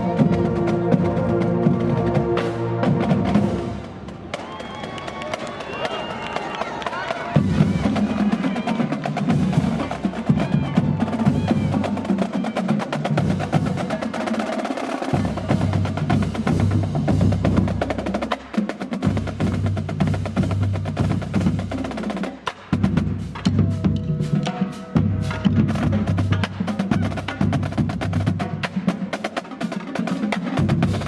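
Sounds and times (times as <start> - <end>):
snare drum rolls: 0.0 - 31.0.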